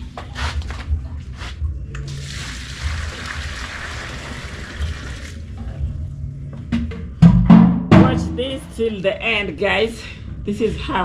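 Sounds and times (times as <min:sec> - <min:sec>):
water pouring into container: 0:02.1 - 0:05.4.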